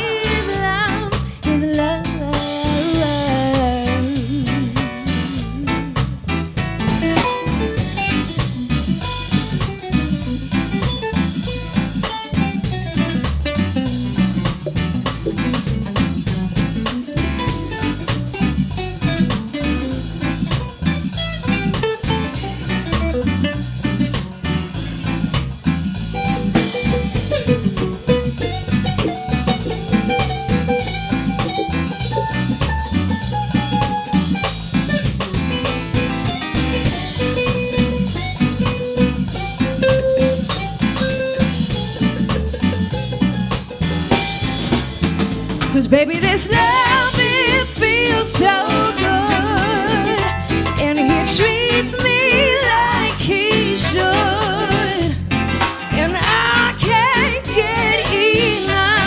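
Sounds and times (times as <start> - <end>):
reggae band playing: 0.0 - 59.0
lead guitar melody: 3.2 - 14.2, 26.1 - 59.0.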